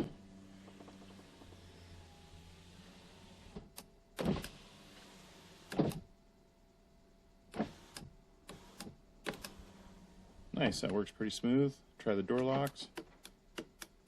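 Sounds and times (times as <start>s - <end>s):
power window motor running: 0.0s - 6.1s, 7.5s - 10.3s
window motor thuds: 0.0s - 6.1s, 7.5s - 9.9s.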